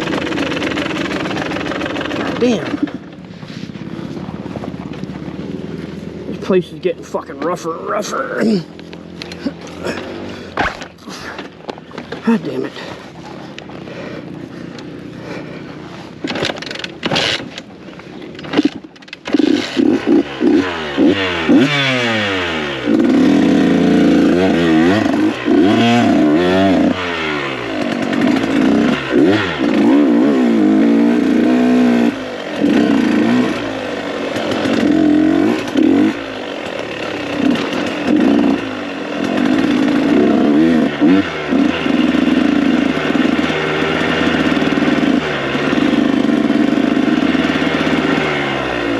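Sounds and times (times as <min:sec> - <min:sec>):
dirt bike engine revving: 0:00.0 - 0:48.9
knocks and clatter: 0:16.2 - 0:17.7.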